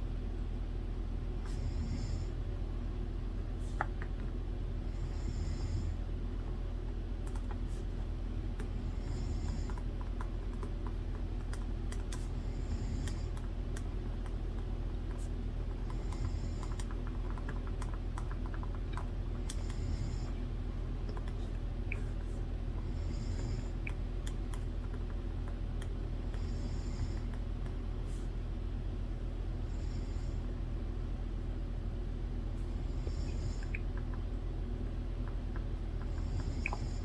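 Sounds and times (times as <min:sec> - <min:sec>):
steady low hum: 0:00.0 - 0:37.0
computer keyboard typing: 0:07.2 - 0:07.7, 0:09.5 - 0:12.3, 0:13.0 - 0:19.8, 0:21.1 - 0:21.6, 0:23.8 - 0:26.0.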